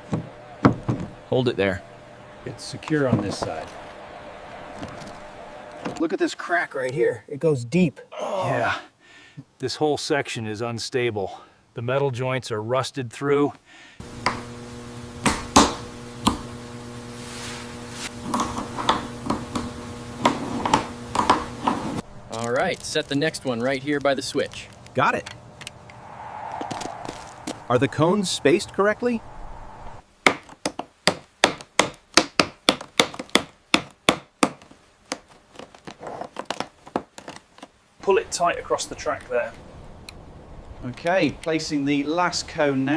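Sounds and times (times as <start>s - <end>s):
steady low hum: 0.0s - 5.9s, 24.7s - 30.0s
sharp woody knocks: 30.2s - 35.2s.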